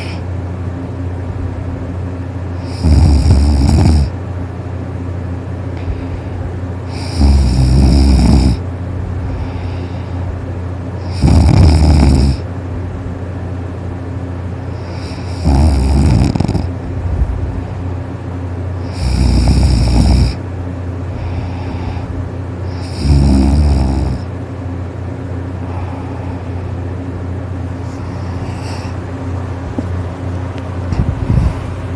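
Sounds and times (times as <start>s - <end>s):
person snoring loudly: 0.0s - 0.2s, 2.6s - 4.2s, 6.9s - 8.6s, 11.0s - 12.4s, 14.7s - 16.8s, 18.8s - 20.4s, 21.2s - 24.3s, 28.0s - 29.0s
steady low hum: 0.0s - 31.9s.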